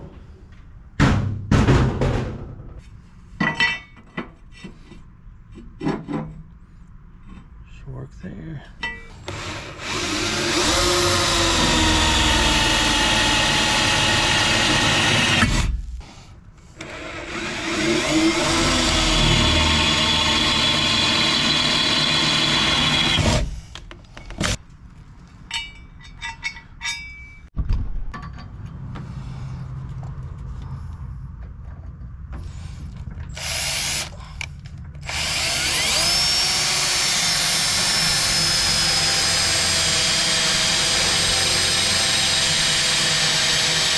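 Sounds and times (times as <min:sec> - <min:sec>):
power drill running: 0:09.1 - 0:15.7, 0:16.8 - 0:23.6, 0:33.3 - 0:34.2, 0:35.0 - 0:43.9.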